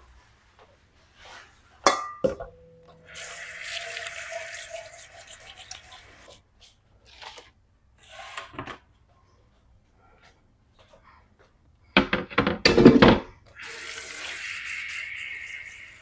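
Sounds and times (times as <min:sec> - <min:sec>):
faucet running into sink: 0:03.1 - 0:06.3.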